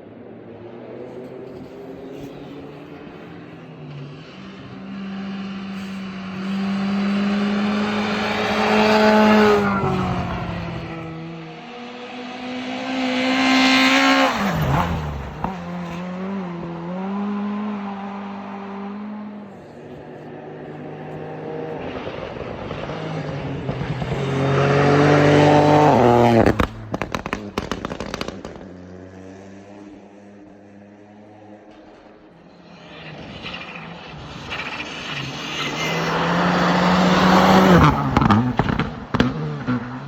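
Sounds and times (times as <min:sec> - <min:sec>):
rally car engine revving: 0:00.1 - 0:40.0
exhaust pops and bangs: 0:26.2 - 0:28.8, 0:37.8 - 0:39.8.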